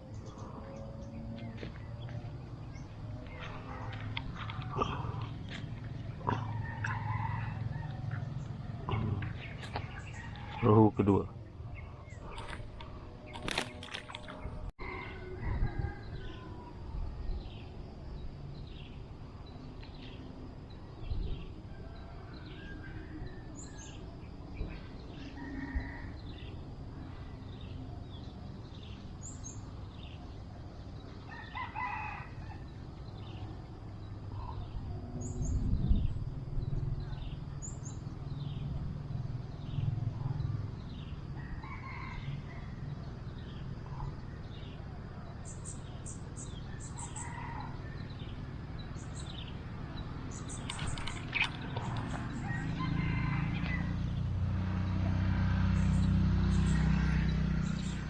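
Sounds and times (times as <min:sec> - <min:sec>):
rooster crowing: 0:06.2 - 0:10.7, 0:14.8 - 0:16.7, 0:25.1 - 0:26.5, 0:31.2 - 0:32.8, 0:41.3 - 0:43.0, 0:46.6 - 0:48.3, 0:51.8 - 0:54.3.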